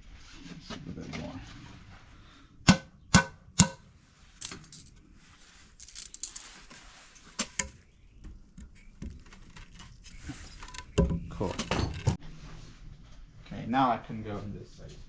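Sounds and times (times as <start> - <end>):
rustling: 4.1 - 7.6.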